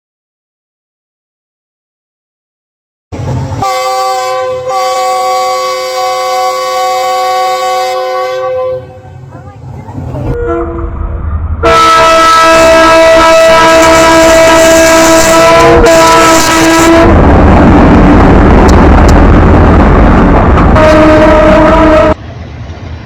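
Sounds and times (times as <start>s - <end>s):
loud noisy rumble: 3.1s - 23.0s
locomotive air horn chord: 3.6s - 9.2s, 10.4s - 10.9s, 11.6s - 17.2s, 20.8s - 22.2s.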